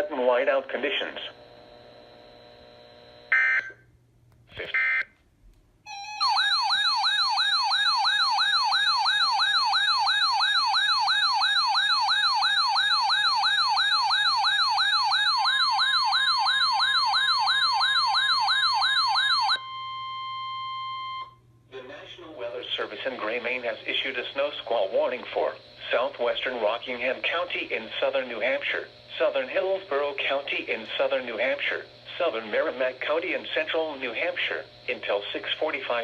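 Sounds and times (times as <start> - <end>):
siren-like warble: 5.9 - 21.3
steady single alarm tone: 5.9 - 21.4.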